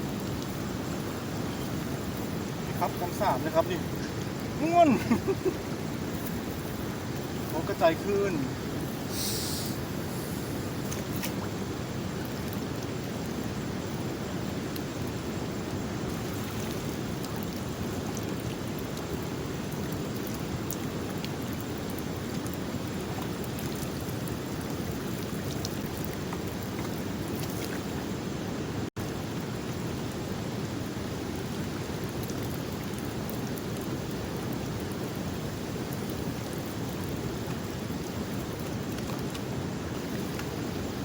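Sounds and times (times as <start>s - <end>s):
fast-flowing river water rushing: 0.1s - 6.1s.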